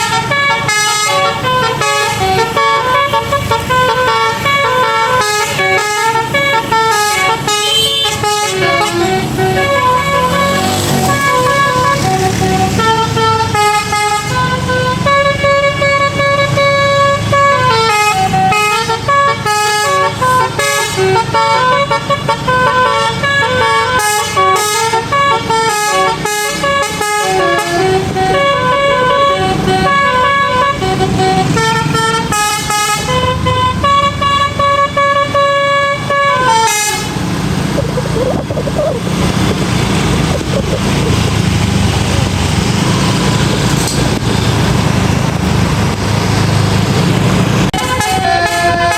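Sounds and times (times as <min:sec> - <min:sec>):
musical bus horn melody: 0:00.0 - 0:37.6, 0:47.6 - 0:48.9
bus rumble: 0:00.0 - 0:48.9.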